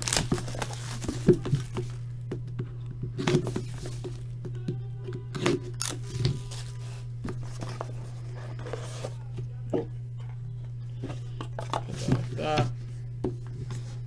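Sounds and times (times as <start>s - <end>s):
cardboard and wrapping rustling: 0.0s - 2.2s, 3.1s - 4.4s, 5.4s - 9.6s
low electrical hum: 0.0s - 14.0s.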